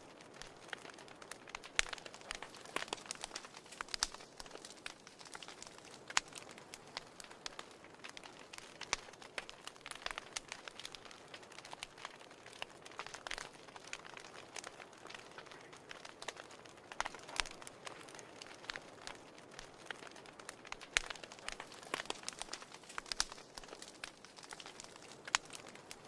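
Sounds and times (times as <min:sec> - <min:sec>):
wood fire crackling and popping: 0:00.0 - 0:26.0.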